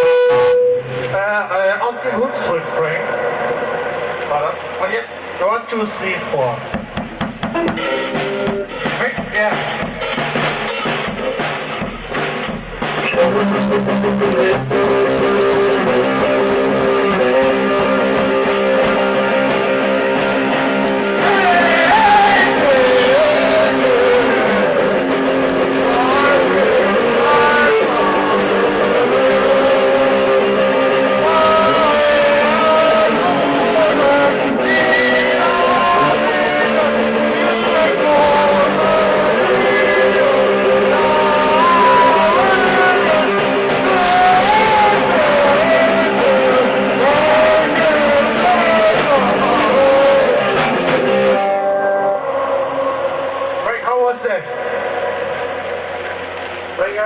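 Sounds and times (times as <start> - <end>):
wavering lead melody: 0.0 - 5.4
sustained chords: 0.0 - 6.8, 7.6 - 57.0
drum beat: 6.7 - 13.9, 14.6 - 51.5.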